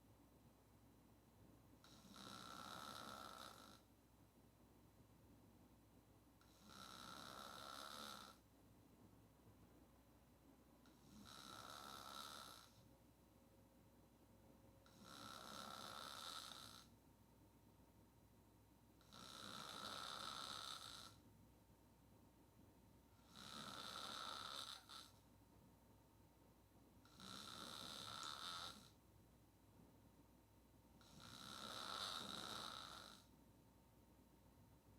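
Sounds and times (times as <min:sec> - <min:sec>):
woman snoring: 0:01.8 - 0:03.9, 0:06.4 - 0:08.4, 0:10.9 - 0:12.8, 0:14.9 - 0:16.9, 0:19.0 - 0:21.2, 0:23.2 - 0:25.2, 0:27.1 - 0:29.0, 0:31.0 - 0:33.3.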